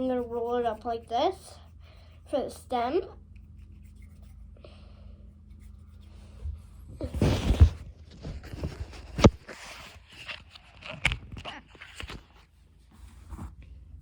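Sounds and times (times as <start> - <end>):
low hum: 0.0 - 9.4
hands rubbing dough: 0.0 - 10.6.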